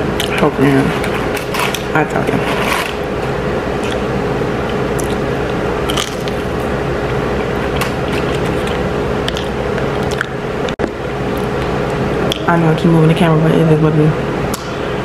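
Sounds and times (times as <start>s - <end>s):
steady background hum: 0.0s - 15.0s
crisp crunches: 5.9s - 6.7s
chewing fried chicken: 7.4s - 10.3s.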